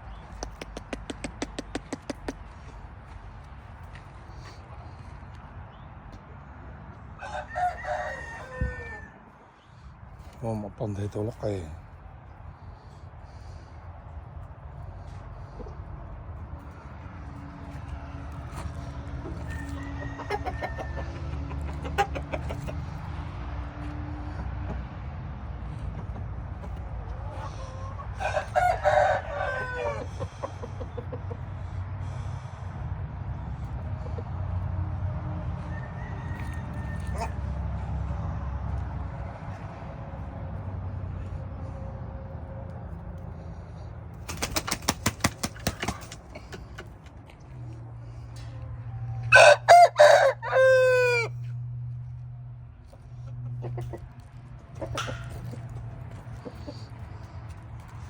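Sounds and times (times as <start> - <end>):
faint clucks: 0.1 - 2.8, 19.2 - 23.1, 52.9 - 58.0
rooster crowing: 7.2 - 9.2, 19.4 - 21.5, 28.0 - 30.3, 35.6 - 37.6, 49.2 - 51.5.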